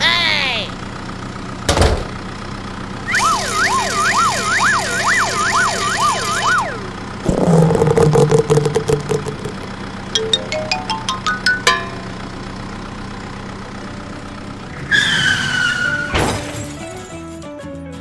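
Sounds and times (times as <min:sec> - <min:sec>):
siren wailing up and down: 0:03.1 - 0:09.4
low buzzing hum: 0:03.1 - 0:10.1.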